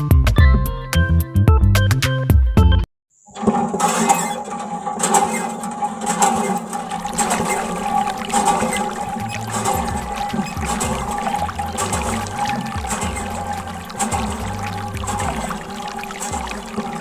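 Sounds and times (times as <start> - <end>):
water gushing and splashing: 3.4 - 17.0
water pump hum: 3.4 - 17.0.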